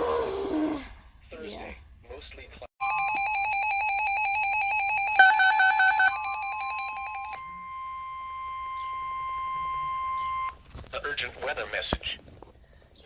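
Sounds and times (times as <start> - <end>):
steady alarm tone: 2.8 - 10.6.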